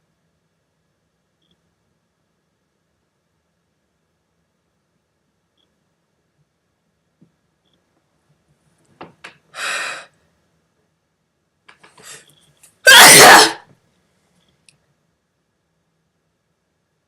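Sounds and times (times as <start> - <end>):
woman's voiced breath: 9.6 - 10.1
woman sneezing loudly: 12.9 - 13.7.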